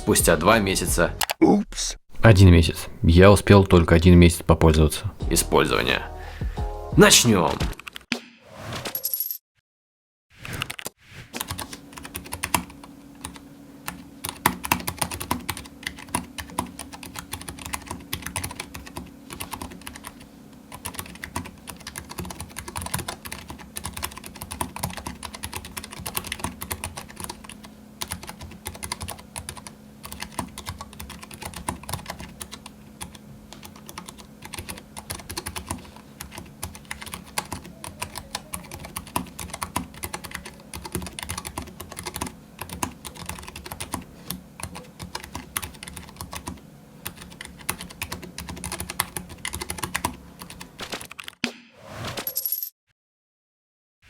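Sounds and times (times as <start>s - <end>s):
mechanical keyboard typing: 10.6s - 51.4s.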